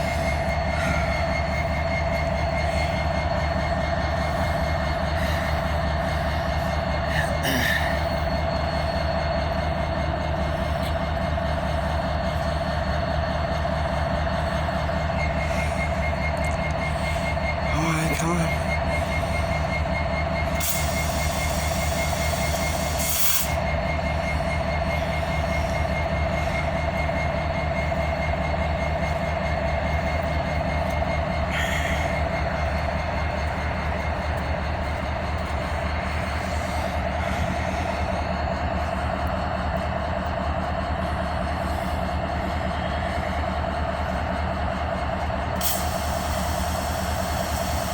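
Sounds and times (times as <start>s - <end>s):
short hissing bursts: 20.6s - 23.6s.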